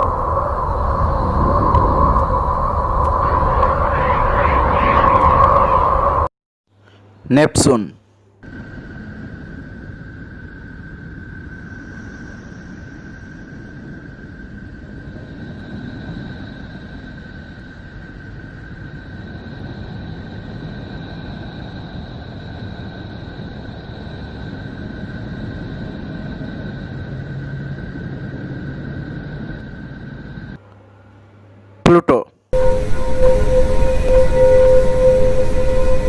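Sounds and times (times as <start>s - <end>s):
low rumbling drone: 0.0s - 6.3s, 8.4s - 31.4s, 32.5s - 36.0s
thin whistling tones: 32.6s - 36.0s.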